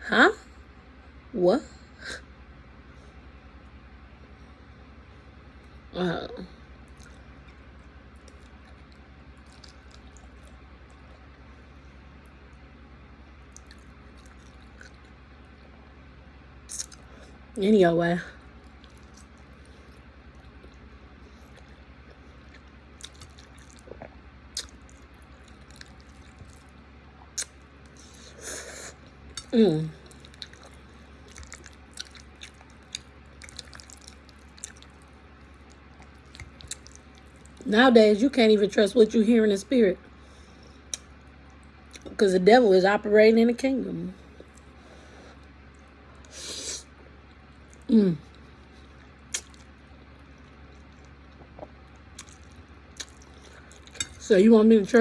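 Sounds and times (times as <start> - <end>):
steady low hum: 0.0 - 55.0
wet chewing: 6.7 - 12.6, 13.4 - 15.2, 18.4 - 37.7, 44.2 - 54.3.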